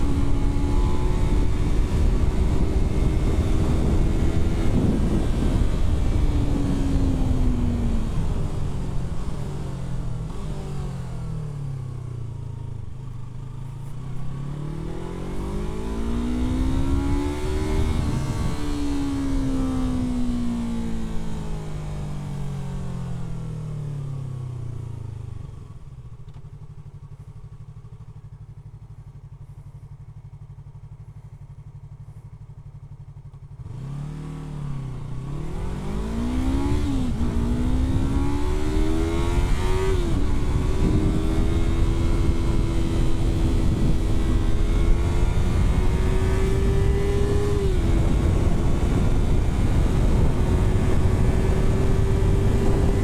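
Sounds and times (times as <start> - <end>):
wind rush: 0.0 - 9.4, 15.7 - 19.3, 35.4 - 53.0
motorcycle engine revving: 0.0 - 53.0.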